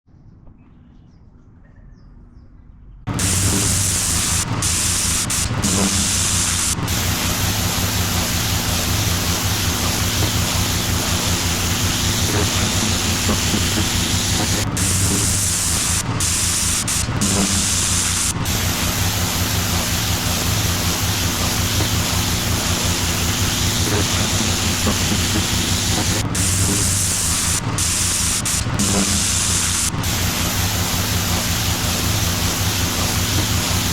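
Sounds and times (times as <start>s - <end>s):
pressure washer engine running: 3.1s - 33.9s
water spray hissing on concrete: 3.1s - 33.9s.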